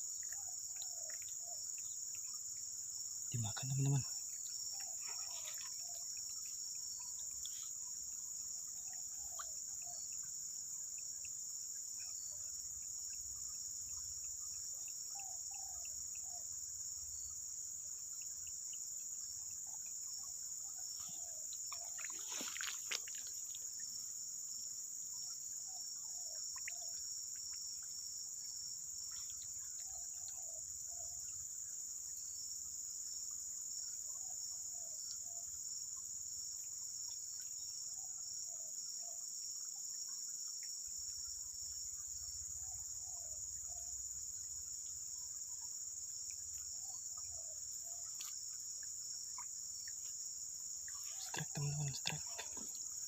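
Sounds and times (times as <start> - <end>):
crickets droning: 0.0 - 53.0
faint short chirping calls: 3.2 - 17.4.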